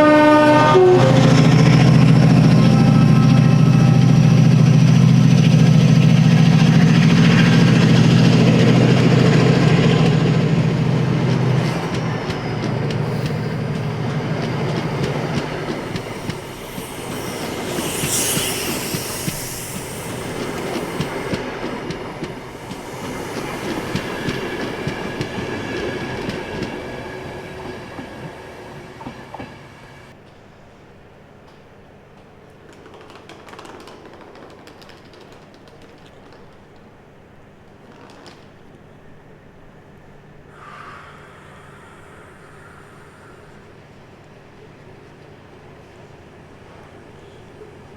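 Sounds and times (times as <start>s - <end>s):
diesel locomotive engine drone: 0.0s - 30.2s, 39.1s - 47.9s
high wheel squeal: 14.9s - 21.3s.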